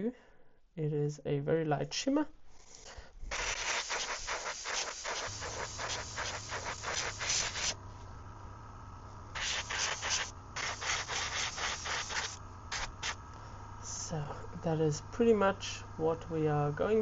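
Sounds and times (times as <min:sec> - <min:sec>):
low steady hum: 0:00.0 - 0:17.0
airbrush hissing: 0:02.6 - 0:07.8, 0:09.3 - 0:13.4.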